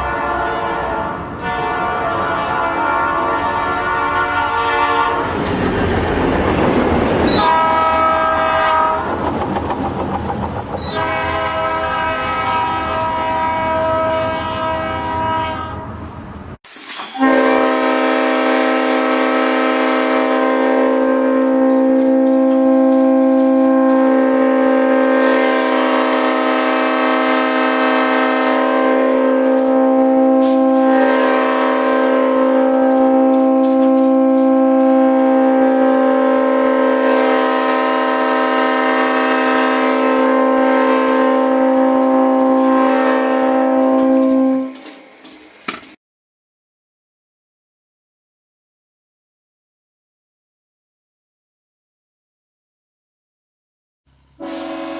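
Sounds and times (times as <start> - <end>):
multi-tone air horn chord: 0.0 - 5.4, 7.4 - 9.0, 11.0 - 15.8, 16.9 - 45.0, 54.4 - 54.9
different horn sound: 0.0 - 5.6, 7.2 - 9.2, 10.8 - 15.9, 16.8 - 45.0, 54.4 - 54.9.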